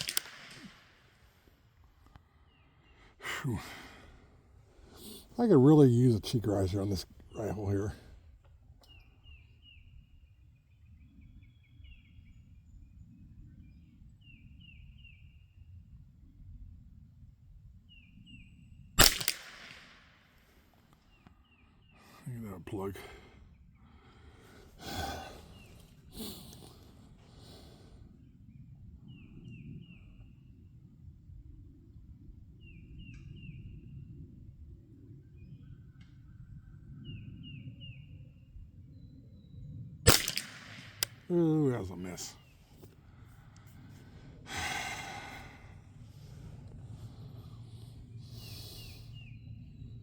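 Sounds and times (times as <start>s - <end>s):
faint low outdoor rumble: 0.0s - 50.0s
bird chirping: 8.8s - 15.8s.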